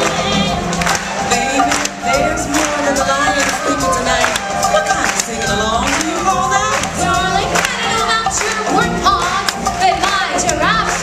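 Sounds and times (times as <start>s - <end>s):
musical backing: 0.0s - 11.0s
voices singing: 0.0s - 11.0s.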